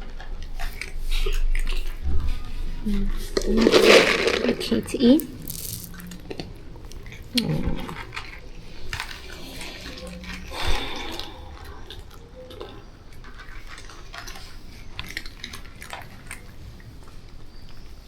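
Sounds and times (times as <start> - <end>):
feeding bowls clinking: 2.8 - 11.4
food pouring into a bowl: 3.4 - 6.2.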